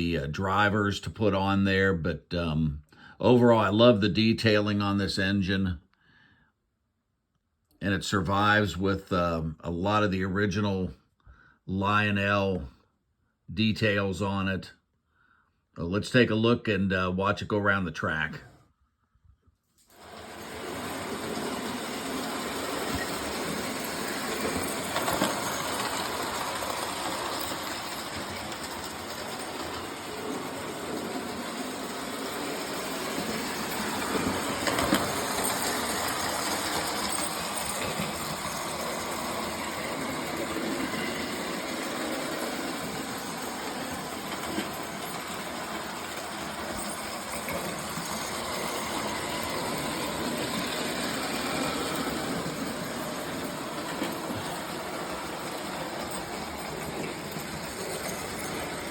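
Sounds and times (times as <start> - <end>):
toy train motor whirring: 19.8 - 58.9
wheels rumbling on rails: 20.0 - 58.9.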